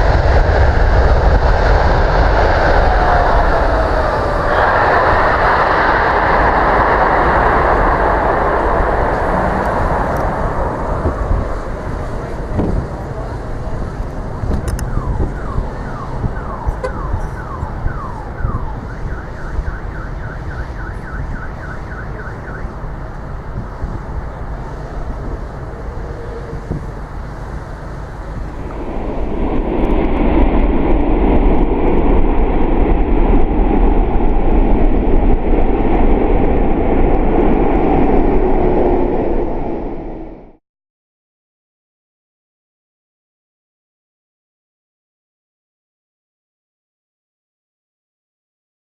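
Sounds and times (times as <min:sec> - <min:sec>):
jet engine roar: 0:00.0 - 0:40.6
steady low rumble: 0:00.0 - 0:40.6
car alarms wailing: 0:14.7 - 0:23.0.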